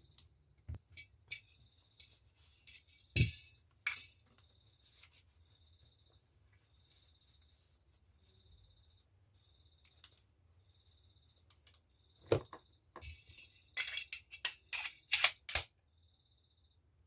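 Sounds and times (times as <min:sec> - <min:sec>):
metallic clicks of pistol handling: 0:14.8 - 0:15.7.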